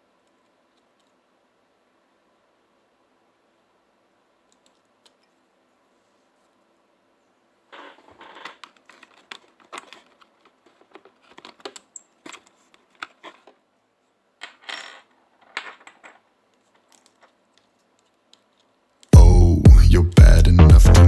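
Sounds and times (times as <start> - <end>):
small tools clicking and tapping: 8.1 - 13.6, 15.5 - 18.7.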